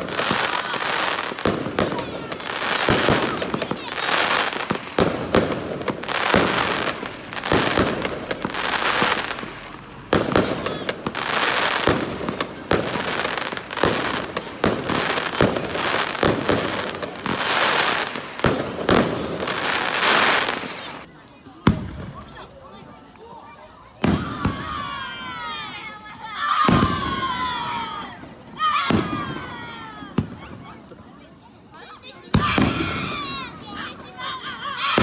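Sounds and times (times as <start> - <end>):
firework hiss: 0.0 - 21.1.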